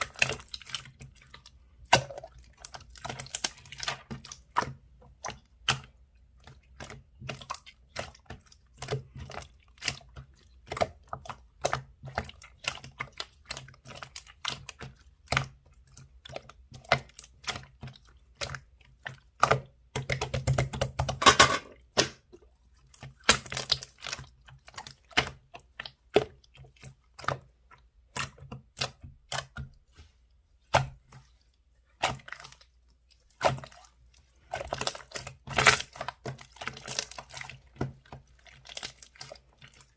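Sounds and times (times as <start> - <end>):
squishy slime stretching: 21.8 - 39.9.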